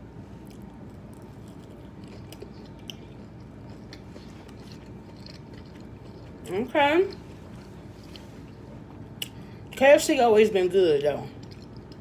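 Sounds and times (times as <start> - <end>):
low background hum: 0.0 - 12.0
person chewing food: 0.4 - 9.6, 11.4 - 12.0.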